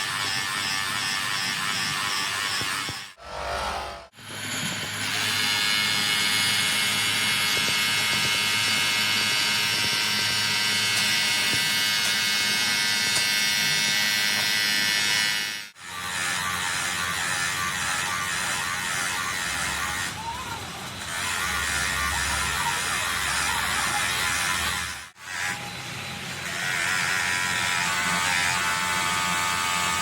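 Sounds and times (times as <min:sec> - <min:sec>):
rough buzzing machine: 0:00.0 - 0:20.2, 0:21.0 - 0:30.0
machine high whine: 0:00.2 - 0:15.7.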